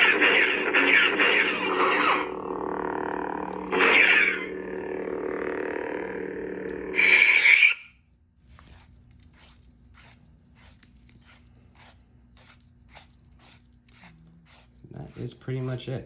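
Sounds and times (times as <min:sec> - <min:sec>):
lightsaber electric hum: 0:00.0 - 0:08.1.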